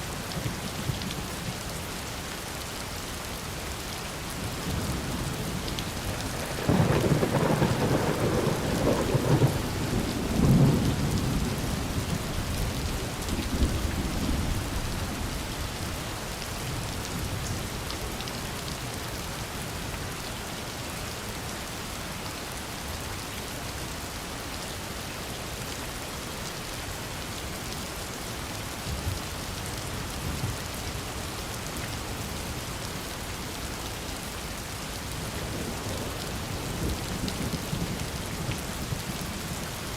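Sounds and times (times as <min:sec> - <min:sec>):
heavy rain: 0:00.0 - 0:39.9
thunder rumbling: 0:04.8 - 0:12.2.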